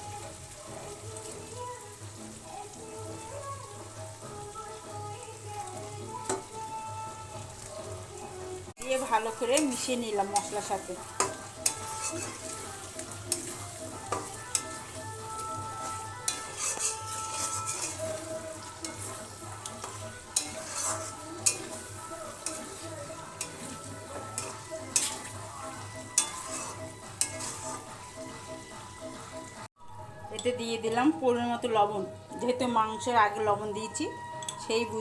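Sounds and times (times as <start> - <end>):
frying sizzle: 0.0 - 35.0
spatula scraping a pan: 8.9 - 29.2.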